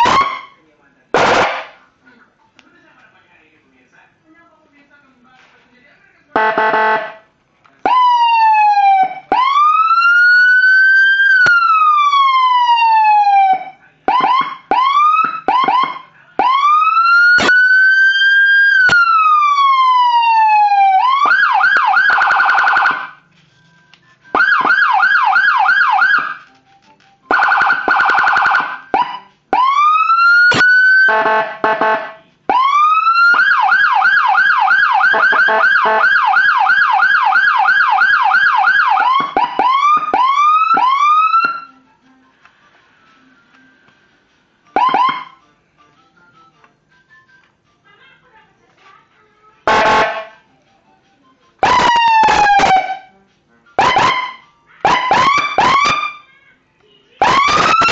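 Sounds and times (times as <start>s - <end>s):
electronic siren wail: 0.0s - 0.5s, 7.9s - 23.2s, 24.4s - 26.4s, 27.3s - 41.7s, 44.8s - 45.4s, 51.6s - 53.1s, 53.8s - 56.2s, 57.2s - 57.9s
fast siren yelp: 0.0s - 0.6s, 7.9s - 23.2s, 24.4s - 26.4s, 27.3s - 41.7s, 44.8s - 45.3s, 51.6s - 53.1s, 53.8s - 56.2s, 57.2s - 57.9s.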